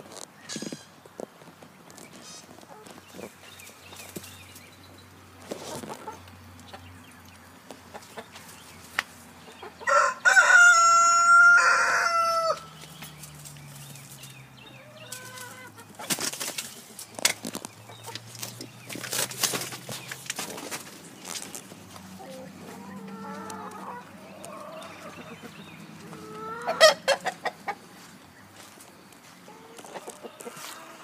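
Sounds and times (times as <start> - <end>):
chicken clucking: 2.0 - 4.2, 5.4 - 31.0
rooster crowing: 9.8 - 12.7.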